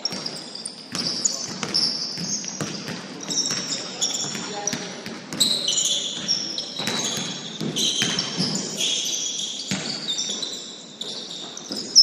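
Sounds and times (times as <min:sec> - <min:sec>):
basketball bouncing: 0:00.0 - 0:05.6, 0:06.2 - 0:08.7
sneakers squeaking on gym floor: 0:00.0 - 0:12.0.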